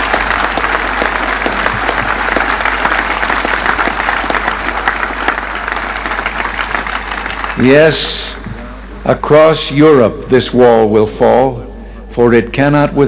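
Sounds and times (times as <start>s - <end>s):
crowd applauding: 0.0s - 9.0s.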